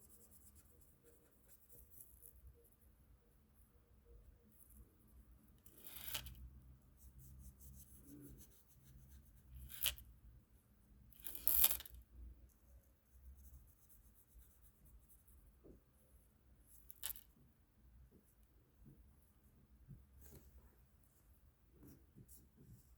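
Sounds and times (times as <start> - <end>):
coloring tool scratching on paper: 7.0 - 9.9.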